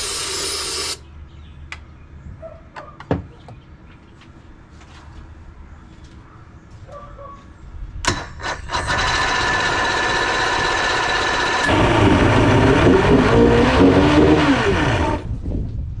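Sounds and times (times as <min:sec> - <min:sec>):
outboard motor running: 0:08.7 - 0:15.3.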